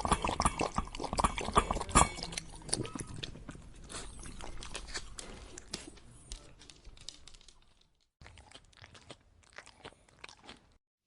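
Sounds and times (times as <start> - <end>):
dog chewing and crunching food: 0.0 - 10.8.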